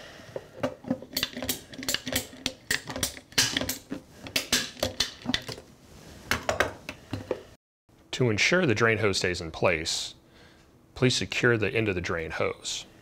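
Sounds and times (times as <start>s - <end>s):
plastic hose clicking and clattering: 0.6s - 5.6s.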